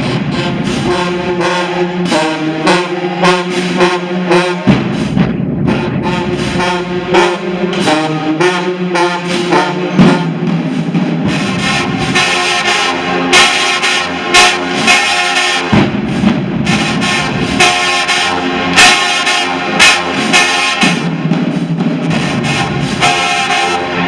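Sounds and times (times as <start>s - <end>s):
brass section playing chords: 0.0s - 24.0s
drums: 0.0s - 24.0s.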